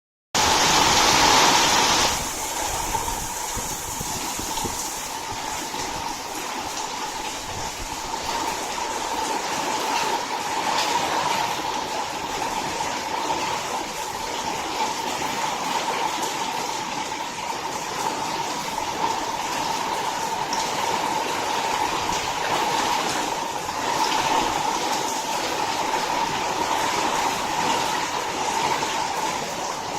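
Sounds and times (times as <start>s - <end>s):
strong wind whistling: 0.4s - 9.4s.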